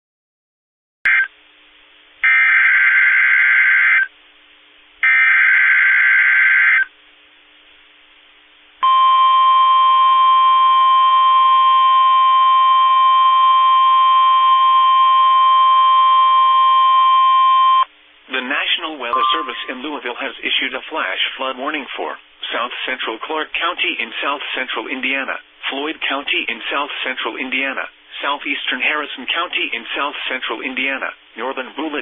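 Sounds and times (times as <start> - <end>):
steady attention tone: 8.8 - 20.2
shrill digital data warble: 19.1 - 19.9.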